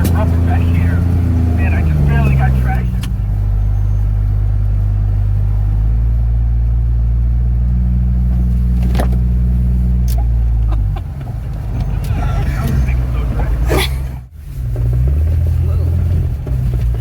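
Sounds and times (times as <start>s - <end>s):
truck engine droning: 0.0s - 17.0s.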